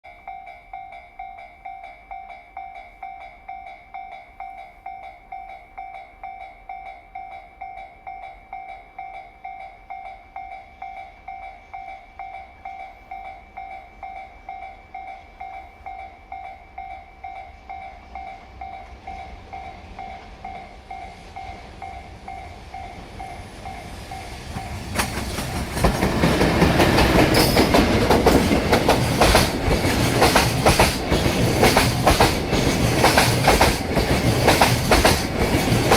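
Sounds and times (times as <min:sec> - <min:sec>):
level crossing warning bell: 0:00.0 - 0:35.9
freight train passing: 0:00.2 - 0:35.9
wheels clattering over rail joints: 0:24.6 - 0:35.9.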